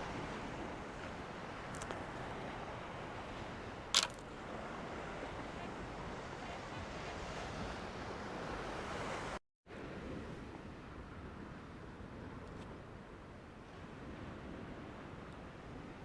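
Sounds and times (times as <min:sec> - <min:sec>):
wind: 0:00.0 - 0:16.0
short sharp click: 0:04.0 - 0:04.2.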